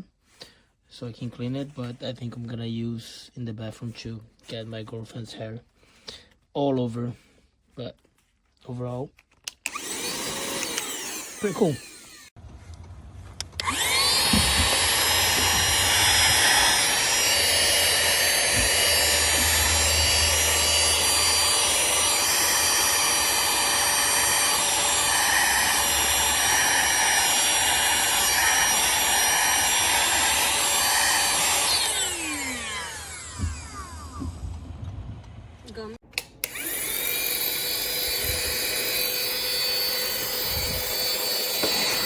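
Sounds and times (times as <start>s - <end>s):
handheld vacuum motor whining: 9.4s - 12.4s, 13.4s - 35.0s, 36.2s - 42.0s.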